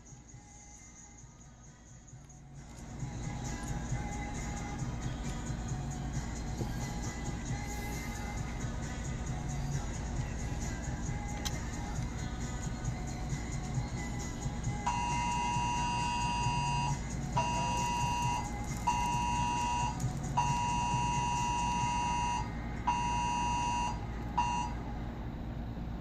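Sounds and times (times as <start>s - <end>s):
electronic beeper beeps: 14.9s - 24.8s.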